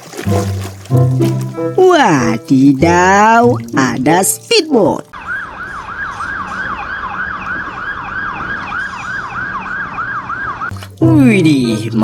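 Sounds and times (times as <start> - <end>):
electronic siren whooping: 5.2 - 10.7.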